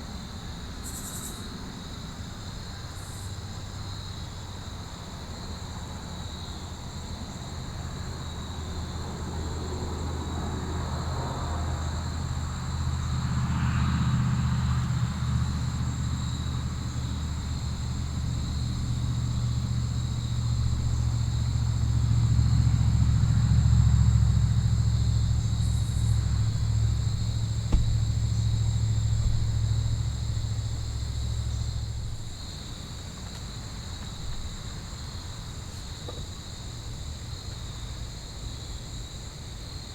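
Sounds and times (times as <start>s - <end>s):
insects chirring: 0.8s - 2.0s, 6.2s - 39.9s
distant vehicle engine rumble: 8.4s - 36.2s.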